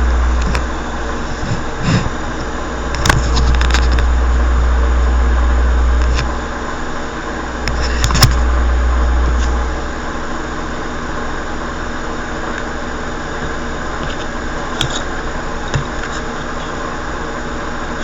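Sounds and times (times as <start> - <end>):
deep rumble: 0.0 - 6.8, 7.4 - 10.4
steady mechanical hum: 0.0 - 18.0.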